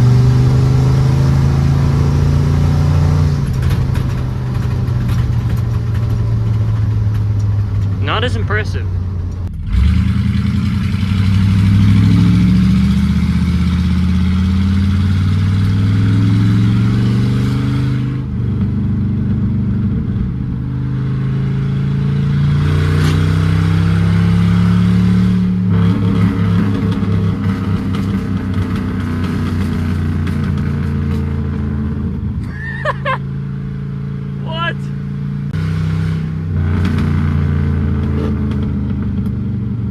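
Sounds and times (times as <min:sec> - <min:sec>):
car engine accelerating: 0:00.0 - 0:39.9
exhaust pops and crackles: 0:01.8 - 0:16.0, 0:25.2 - 0:32.6, 0:36.4 - 0:39.9.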